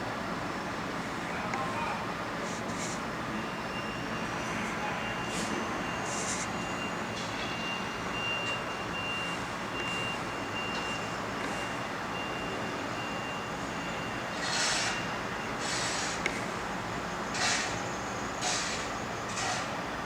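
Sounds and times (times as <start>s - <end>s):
street traffic noise: 0.0s - 20.0s
faint high beep: 3.4s - 14.2s.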